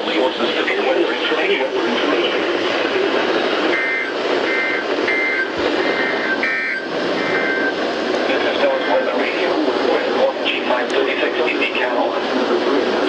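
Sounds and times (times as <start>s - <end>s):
radio static hiss: 0.0s - 13.0s
high two-tone beeps: 3.7s - 7.8s.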